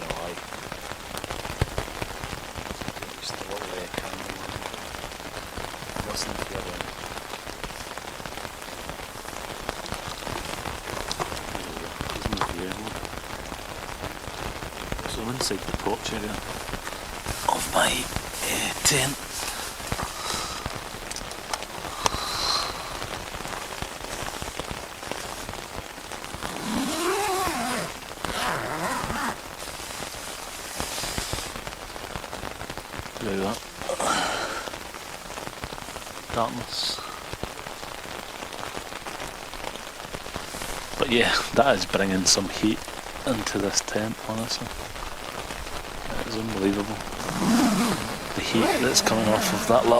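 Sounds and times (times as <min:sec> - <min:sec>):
rain on a tent: 0:00.0 - 0:49.9
faint voice: 0:47.8 - 0:49.9.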